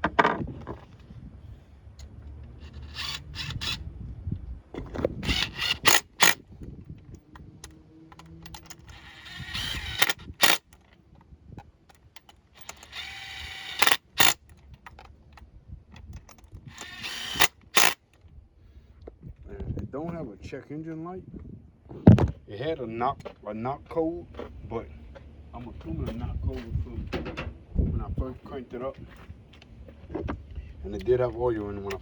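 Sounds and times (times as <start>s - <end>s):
sharp mechanical clicks and knocks: 4.8s - 11.0s, 11.9s - 18.2s.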